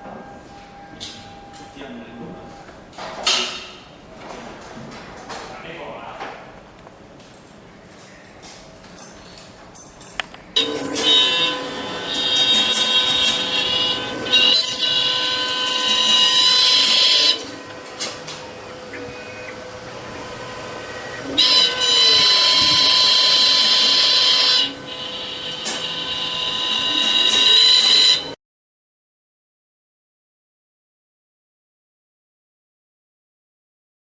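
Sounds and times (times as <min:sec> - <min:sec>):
axis motors gliding: 0:10.6 - 0:28.4
milling spindle whining: 0:10.6 - 0:28.4.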